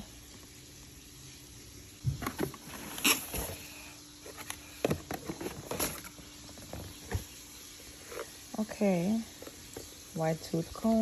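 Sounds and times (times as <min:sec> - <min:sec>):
packaging rustling: 0:02.2 - 0:08.5.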